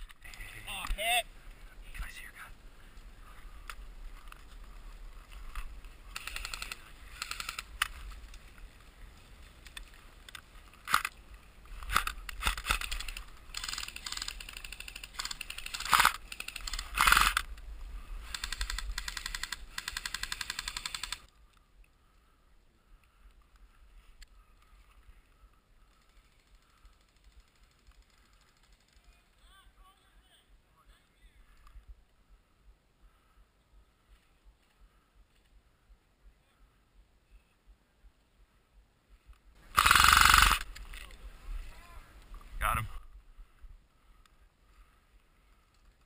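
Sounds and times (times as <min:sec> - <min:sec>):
airsoft guns firing: 0:39.7 - 0:40.7.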